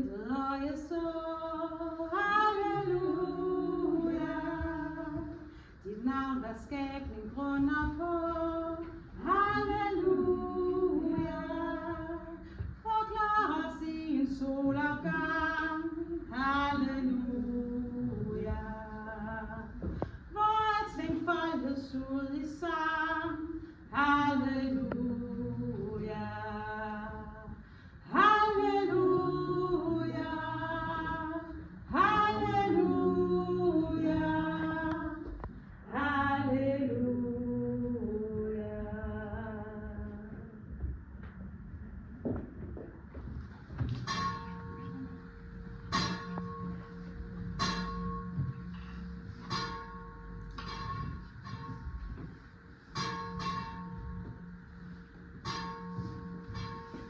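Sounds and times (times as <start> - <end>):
woman singing a hymn: 0.0 - 40.9
voices singing a hymn: 0.9 - 5.5, 7.9 - 12.4, 28.1 - 35.4.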